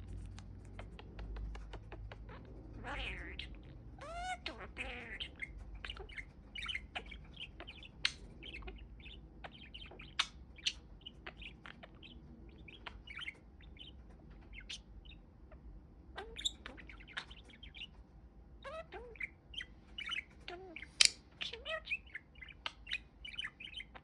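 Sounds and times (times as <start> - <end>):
budgie chattering: 0.0 - 15.2, 16.2 - 17.9, 18.6 - 24.0.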